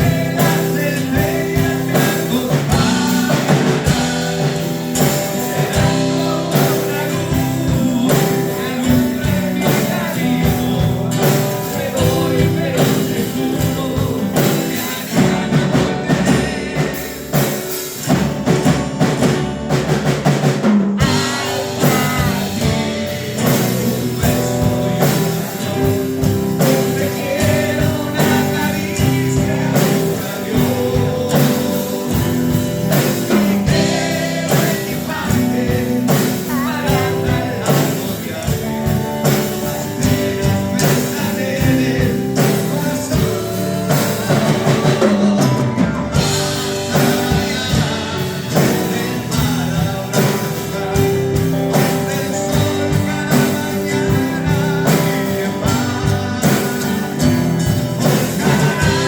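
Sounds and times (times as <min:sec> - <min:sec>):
lead singer: 0:00.0 - 0:59.0
live band playing a ballad: 0:00.0 - 0:59.0.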